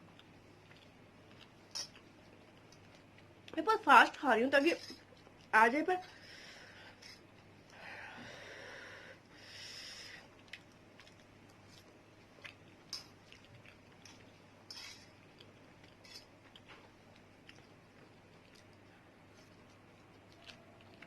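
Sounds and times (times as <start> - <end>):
person chewing noodles: 0.0 - 3.6, 9.2 - 21.0.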